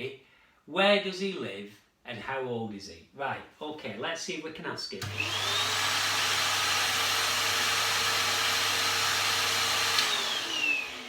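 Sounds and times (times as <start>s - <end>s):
vacuum cleaner running: 5.0s - 11.0s
vacuum motor spinning down: 5.0s - 11.0s.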